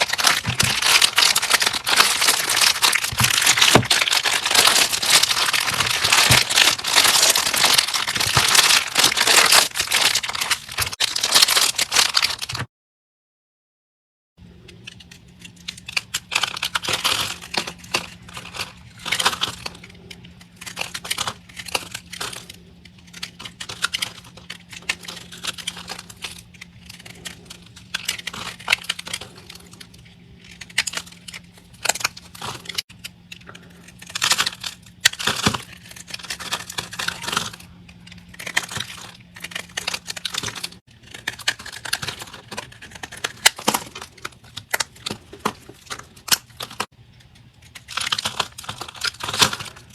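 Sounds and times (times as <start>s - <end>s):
faint steady hum: 14.4s - 49.9s.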